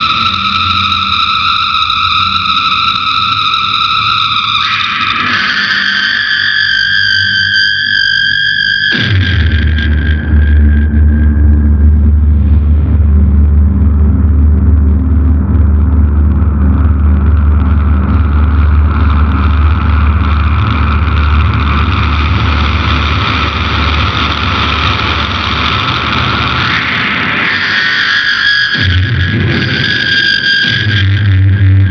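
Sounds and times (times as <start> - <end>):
fuzzed electric guitar drone: 0.0 - 31.9.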